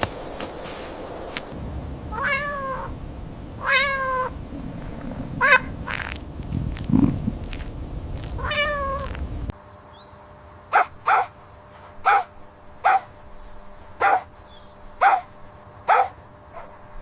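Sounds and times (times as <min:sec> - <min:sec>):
cat meowing: 0:02.1 - 0:02.9, 0:03.6 - 0:04.3, 0:05.4 - 0:06.2, 0:08.3 - 0:09.2.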